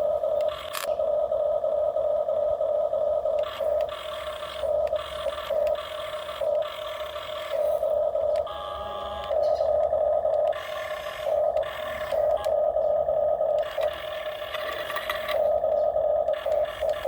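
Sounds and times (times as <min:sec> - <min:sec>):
small electric motors whining: 0:00.0 - 0:17.0.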